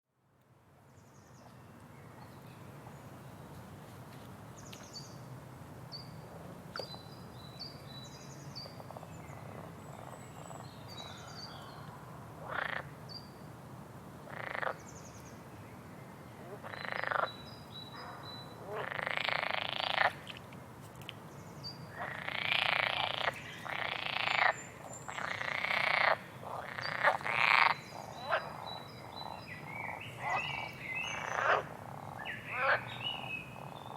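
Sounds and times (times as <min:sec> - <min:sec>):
frogs croaking: 0:08.6 - 0:11.7, 0:12.4 - 0:13.0, 0:14.3 - 0:15.0, 0:16.4 - 0:20.4, 0:21.9 - 0:33.9.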